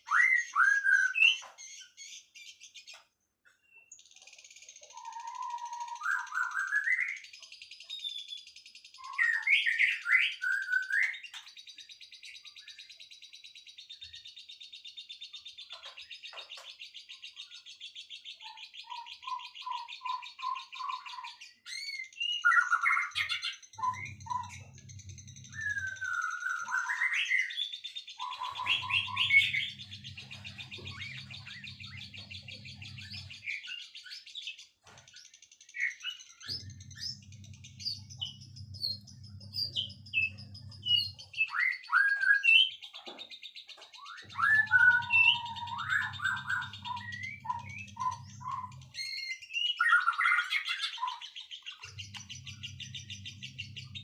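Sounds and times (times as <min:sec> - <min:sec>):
high-pitched bird trill: 0:00.0 - 0:02.3, 0:03.7 - 0:11.5, 0:18.4 - 0:34.3, 0:35.7 - 0:54.0
songbirds whistling and chirping: 0:00.0 - 0:54.0
low hum: 0:23.8 - 0:26.7, 0:28.3 - 0:33.5, 0:36.4 - 0:41.5, 0:44.2 - 0:49.0, 0:51.8 - 0:54.0.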